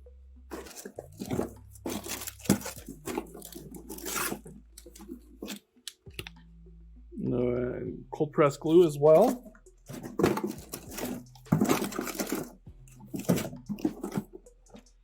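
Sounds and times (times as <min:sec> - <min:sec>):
small tools clattering: 0:00.5 - 0:06.0, 0:09.1 - 0:15.0
plastic packaging crinkling: 0:00.5 - 0:06.1, 0:09.1 - 0:14.9.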